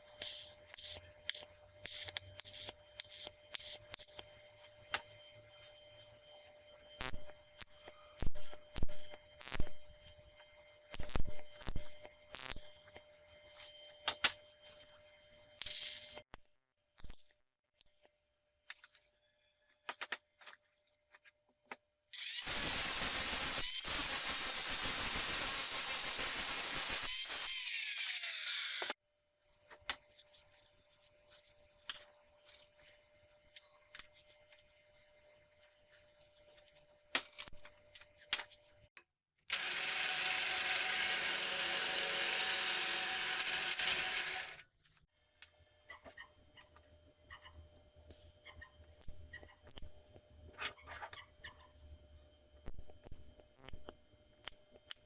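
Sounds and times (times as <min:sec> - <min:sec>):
welding arc crackling hiss: 0:07.0 - 0:09.7, 0:22.4 - 0:28.9
power tool running on metal: 0:22.2 - 0:29.0, 0:39.5 - 0:44.7.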